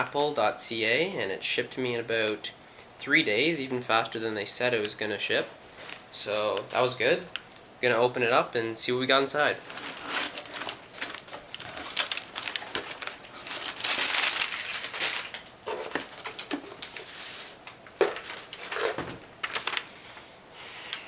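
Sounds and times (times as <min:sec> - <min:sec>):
packing paper rustling: 0:09.5 - 0:20.3.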